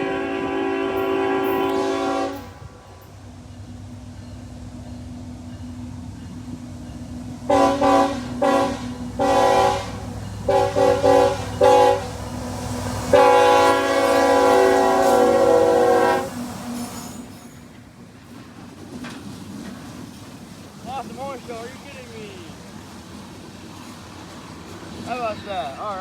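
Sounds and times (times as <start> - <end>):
locomotive air horn blasts: 0.0 - 2.8, 7.5 - 17.1
train rumble: 0.0 - 26.0.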